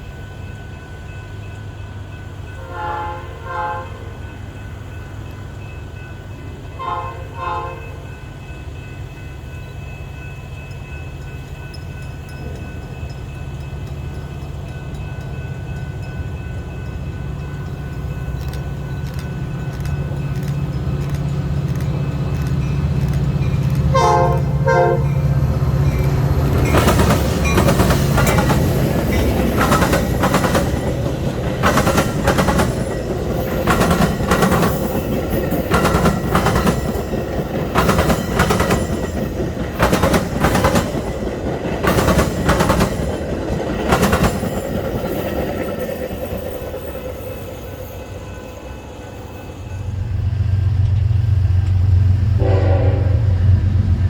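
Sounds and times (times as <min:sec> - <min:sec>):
train horn: 0:02.6 - 0:04.2, 0:06.8 - 0:08.2, 0:23.9 - 0:25.4, 0:52.0 - 0:54.0
train wheels clicking over rail joints: 0:10.6 - 0:47.9.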